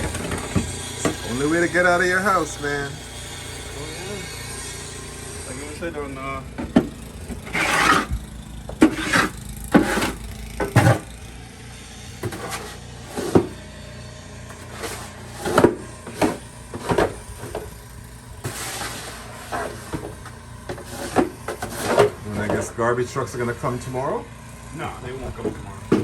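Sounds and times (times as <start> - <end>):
shovel scraping snow: 6.8 - 11.2, 12.1 - 13.6, 14.5 - 22.7.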